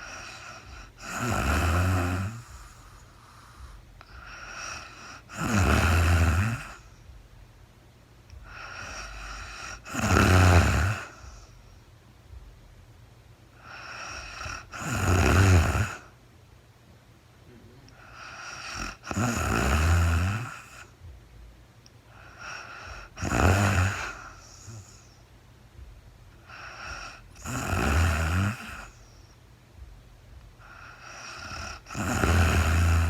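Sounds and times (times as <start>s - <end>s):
woman snoring: 0.0s - 7.0s, 8.4s - 11.6s, 13.6s - 16.1s, 17.9s - 21.0s, 22.1s - 25.2s, 26.4s - 29.3s, 30.6s - 33.0s
quiet breathing: 0.0s - 7.4s, 8.2s - 12.5s, 13.5s - 16.2s, 17.5s - 21.2s, 21.9s - 33.0s.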